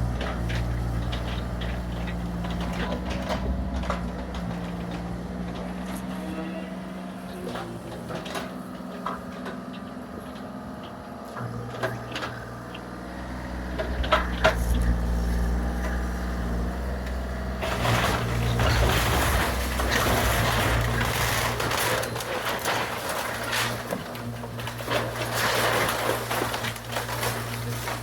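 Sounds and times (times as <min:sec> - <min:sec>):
excavator engine running: 0:00.0 - 0:28.0
loud crunching and rattling: 0:00.0 - 0:28.0
sharp knocks and cracks: 0:16.9 - 0:28.0.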